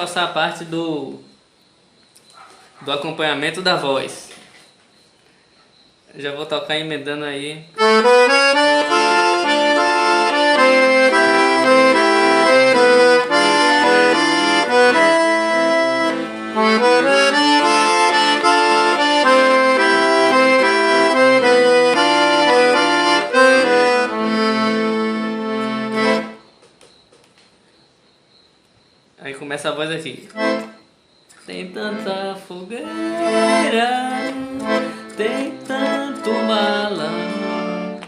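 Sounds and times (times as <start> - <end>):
piano accordion playing: 7.8 - 26.5, 30.3 - 30.9, 31.5 - 38.0.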